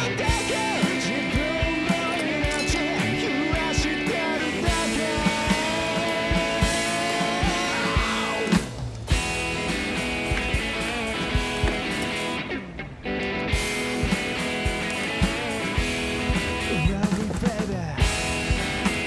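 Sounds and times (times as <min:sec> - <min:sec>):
man singing held notes: 0:00.0 - 0:08.6
rock song with guitar and drums: 0:00.0 - 0:19.0.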